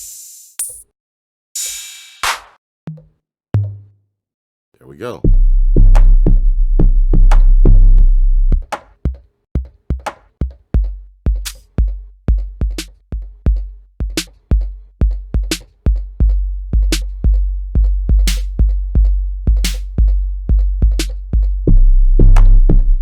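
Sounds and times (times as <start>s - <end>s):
hi-hat clap and cymbal hits: 0.0s - 0.8s, 1.6s - 2.6s, 18.3s - 18.6s, 19.6s - 20.0s, 20.9s - 21.3s
low bass drum-machine notes: 5.2s - 8.6s, 10.8s - 23.0s.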